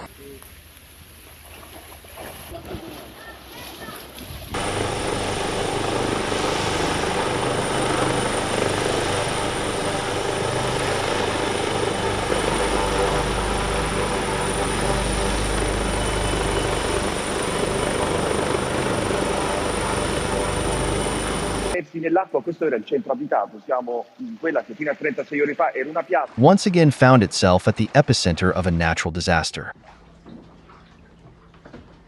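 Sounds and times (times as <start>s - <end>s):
helicopter rotor and engine: 4.6s - 21.8s.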